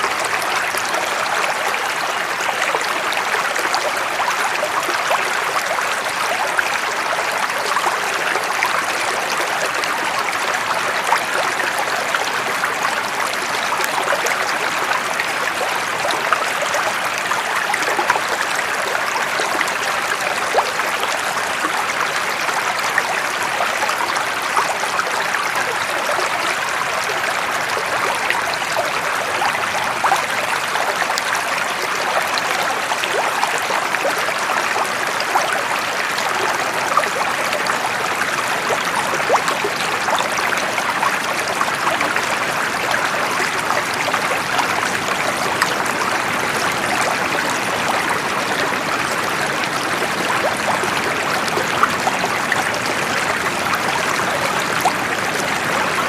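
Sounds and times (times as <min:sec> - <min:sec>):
stream water flowing: 0:00.0 - 0:56.0.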